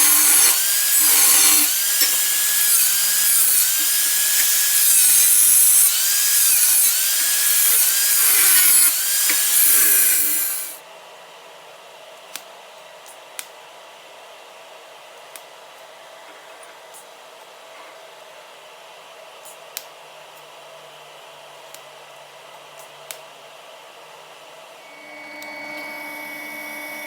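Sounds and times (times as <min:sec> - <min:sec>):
hand tool screeching on steel: 0:00.0 - 0:10.8, 0:24.9 - 0:27.0
steady hum: 0:24.8 - 0:27.0.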